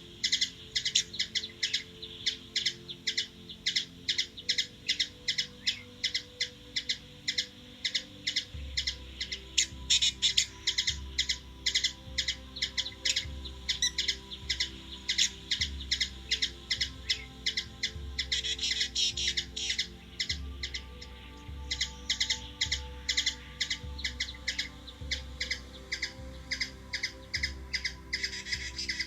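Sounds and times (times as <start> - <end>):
hummingbird chip notes: 0.0 - 29.0.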